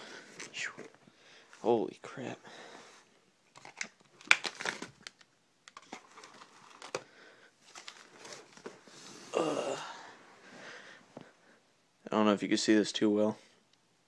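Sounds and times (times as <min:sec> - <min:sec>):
packaging crinkling and rustling: 0:03.5 - 0:09.0.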